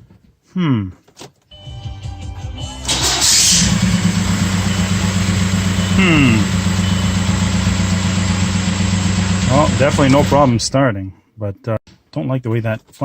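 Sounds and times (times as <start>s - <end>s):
starter motor cranking: 2.8s - 5.8s
diesel engine idling: 2.8s - 10.6s.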